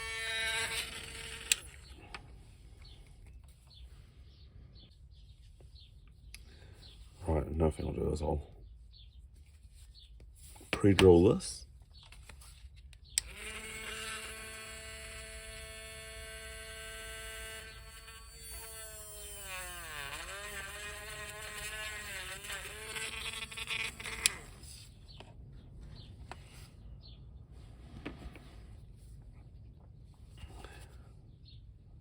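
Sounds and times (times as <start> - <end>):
electric drill whining: 0.0 - 2.1, 13.2 - 24.9.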